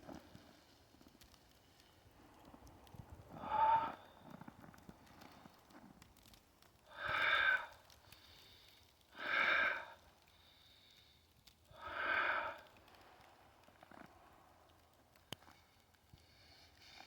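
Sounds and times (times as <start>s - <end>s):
man breathing heavily: 3.4s - 4.5s, 6.8s - 13.0s.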